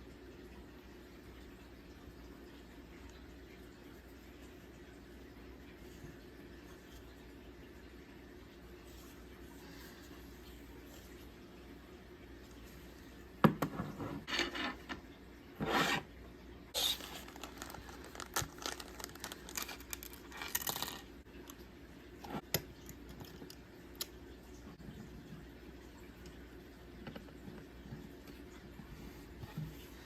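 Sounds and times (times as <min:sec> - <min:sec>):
packaging scraping and rustling: 0:16.8 - 0:21.1.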